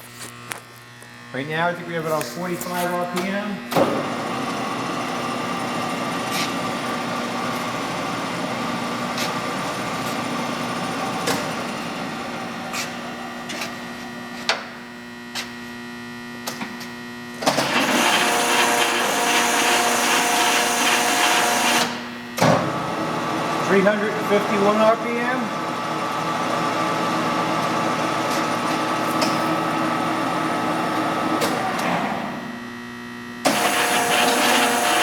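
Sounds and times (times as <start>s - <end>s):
lathe running with gear hum: 4.0s - 14.4s, 17.5s - 22.1s, 33.4s - 35.0s.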